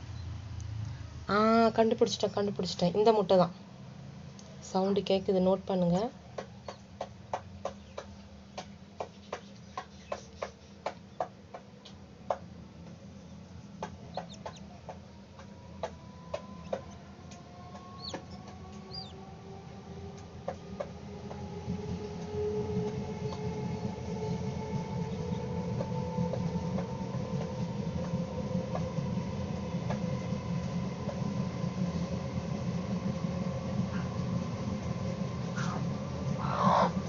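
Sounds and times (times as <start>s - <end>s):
steady drone: 11.4s - 37.0s
chick peeping inside egg: 14.1s - 14.7s, 18.0s - 19.1s.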